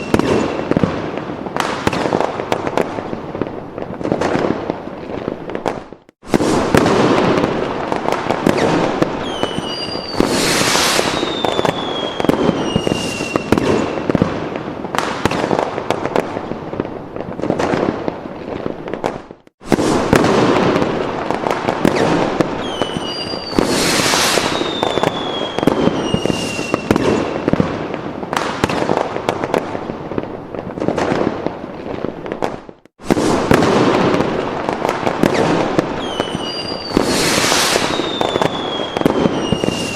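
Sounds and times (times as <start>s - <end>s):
whistling rockets: 0.0s - 2.2s, 5.7s - 14.4s, 19.0s - 27.7s, 32.4s - 39.9s
fireworks bangs and crackling: 0.0s - 39.9s.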